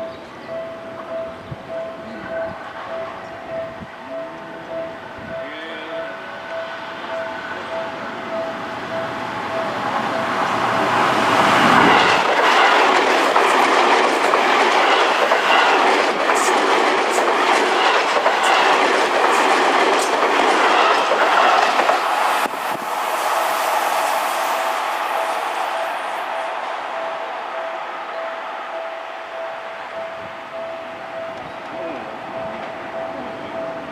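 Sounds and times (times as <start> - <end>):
crossing warning bell: 0.0 - 33.9
train wheel and rail noise: 0.0 - 33.9
wheels clacking over rail joints: 7.1 - 22.8.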